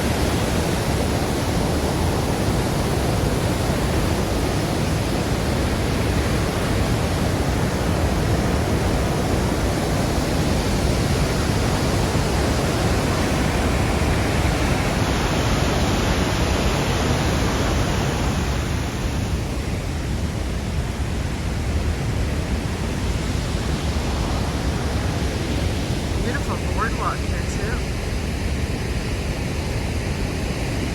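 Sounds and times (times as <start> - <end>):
waterfall rushing: 26.0 - 27.9.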